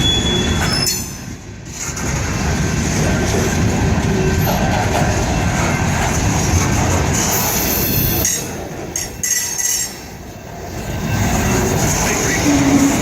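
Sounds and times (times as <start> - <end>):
train wheel squeal: 0.0 - 1.3, 7.2 - 13.0
freight train rumbling past: 0.0 - 13.0.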